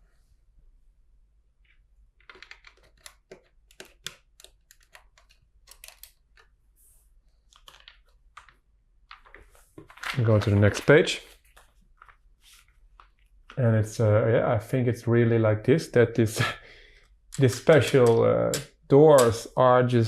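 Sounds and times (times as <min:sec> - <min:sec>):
plastic bricks clicking: 0:07.5 - 0:10.8.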